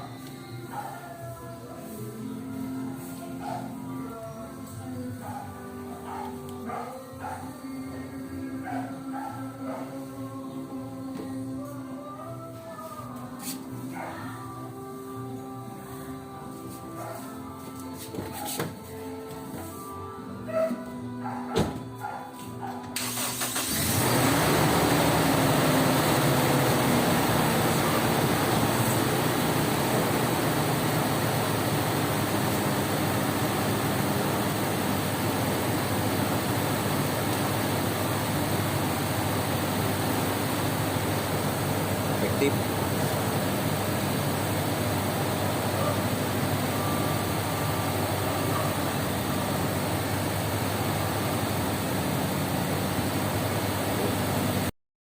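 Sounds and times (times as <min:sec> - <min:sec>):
car engine idling: 0:23.0 - 0:54.7.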